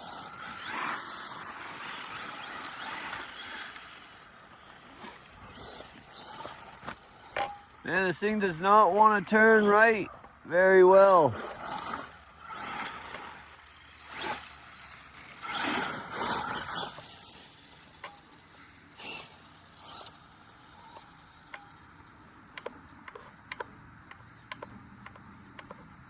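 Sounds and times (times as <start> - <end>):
rc truck driving over rough ground: 0.0 - 26.0
sharp clicks and ticks: 22.5 - 26.0.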